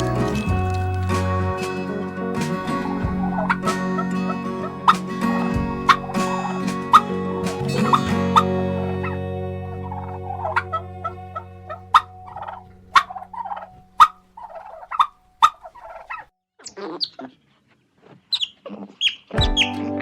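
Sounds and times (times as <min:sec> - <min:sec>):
music: 0:00.0 - 0:14.1, 0:19.4 - 0:20.0.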